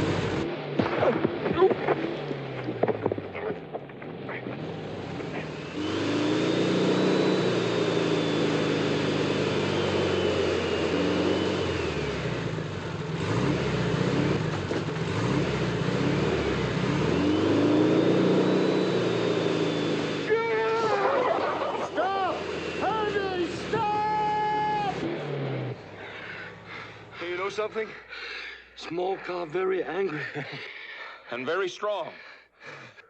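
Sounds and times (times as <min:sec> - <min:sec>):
car engine revving hard: 0:00.0 - 0:03.1, 0:04.4 - 0:27.3.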